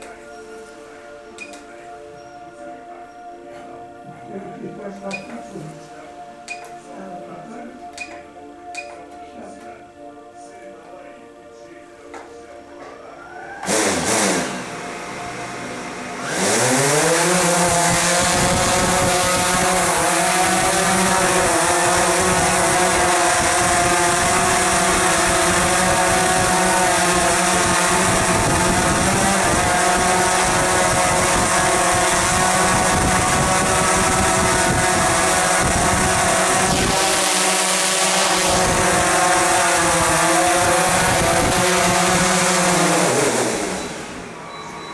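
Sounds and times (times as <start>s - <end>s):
drone motors whirring: 13.3s - 44.9s.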